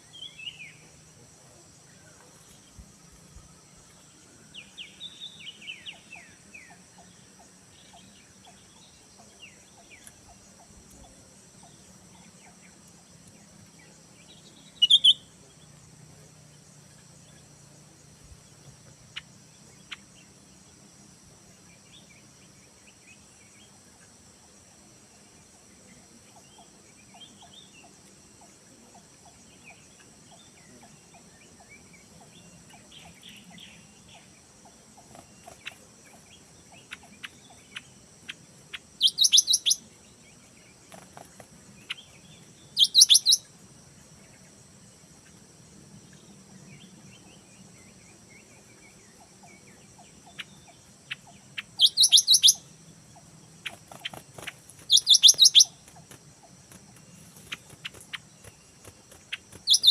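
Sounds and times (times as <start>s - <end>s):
faint bird calls: 0.0s - 15.6s, 25.1s - 43.5s, 46.2s - 59.9s
insect drone: 0.0s - 59.9s
birds chirping rapidly: 14.2s - 15.3s, 35.0s - 39.9s, 40.7s - 43.5s, 49.1s - 59.9s.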